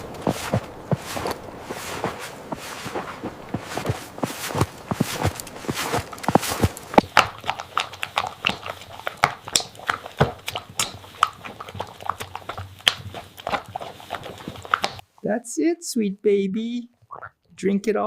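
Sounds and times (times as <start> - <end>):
dog drinking: 5.6 - 15.0.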